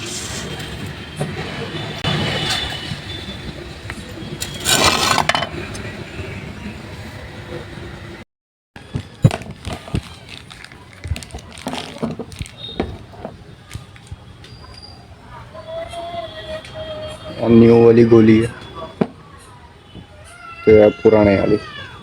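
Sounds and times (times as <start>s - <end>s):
metal tool clinks and scrapes: 4.4s - 5.5s.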